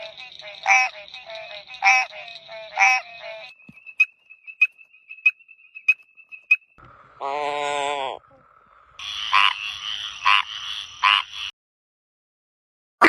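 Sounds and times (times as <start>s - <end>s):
loud frog croak: 0.0s - 3.5s, 6.8s - 11.5s
chorus of faint frog calls: 0.0s - 11.5s.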